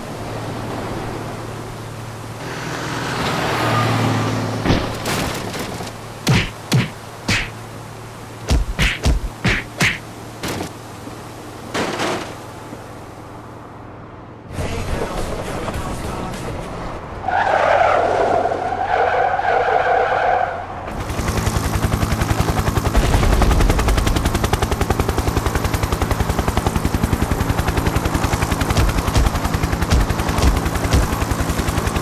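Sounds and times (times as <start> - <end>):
rapid sharp bangs: 6.2 - 7.6, 8.4 - 10.7, 28.6 - 31.8
steady low hum: 20.9 - 32.0.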